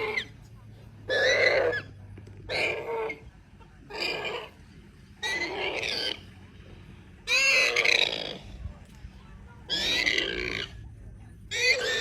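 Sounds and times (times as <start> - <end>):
animal calling loudly: 0.0 - 0.3, 1.1 - 3.3, 3.9 - 4.6, 5.2 - 6.3, 7.2 - 8.6, 9.7 - 10.8, 11.5 - 12.0.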